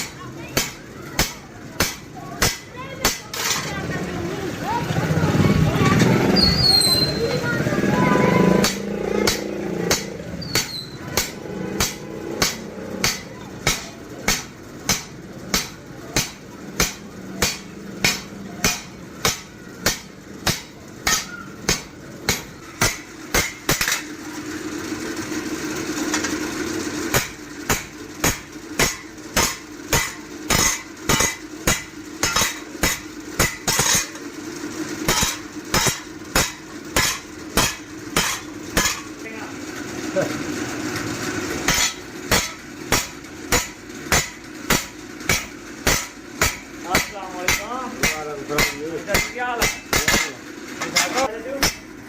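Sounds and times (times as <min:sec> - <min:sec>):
hammer striking metal on anvil: 0:00.0 - 0:03.7, 0:08.6 - 0:24.1, 0:27.1 - 0:34.2, 0:35.1 - 0:39.1, 0:41.6 - 0:51.9
steady hum: 0:07.1 - 0:52.0.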